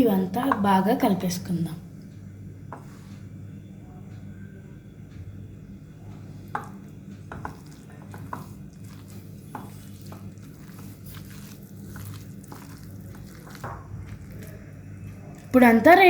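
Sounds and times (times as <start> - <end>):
mash squishing in a bowl: 6.2 - 16.0.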